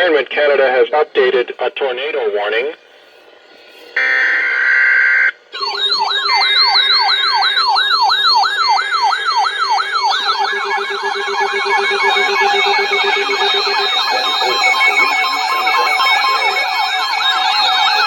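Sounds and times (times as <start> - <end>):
electronic siren alert: 4.0 - 18.0
fast sweeping siren: 4.0 - 18.0
digital data tone: 5.6 - 18.0.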